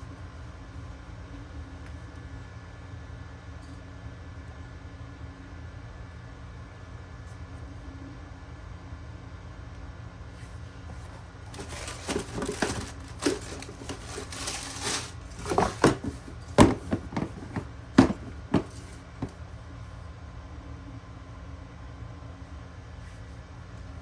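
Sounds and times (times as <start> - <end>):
steady low hum: 0.0 - 24.0
handling rustling: 10.9 - 19.4.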